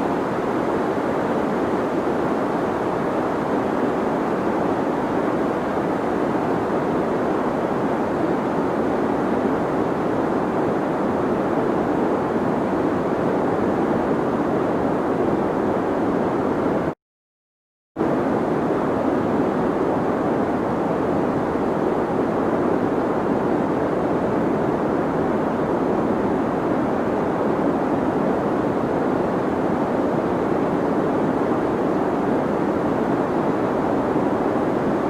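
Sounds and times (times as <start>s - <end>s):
deep white noise: 0.0s - 16.9s.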